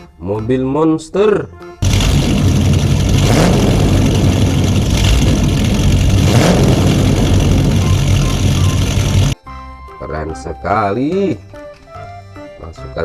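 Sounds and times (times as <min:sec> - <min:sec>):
big engine revving: 0:01.8 - 0:09.4.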